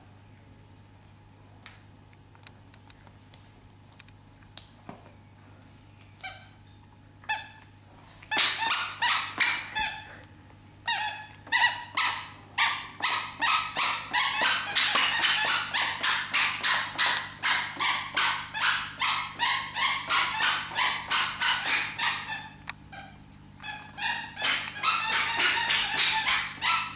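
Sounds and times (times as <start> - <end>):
squeaker shoes squeaking: 6.2 - 6.6, 8.3 - 10.2, 10.8 - 26.9.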